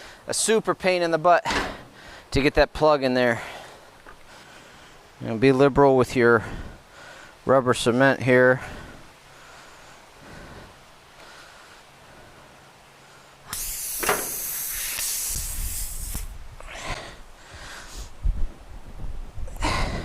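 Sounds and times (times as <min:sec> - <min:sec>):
air hissing out of tire: 0:13.5 - 0:16.4.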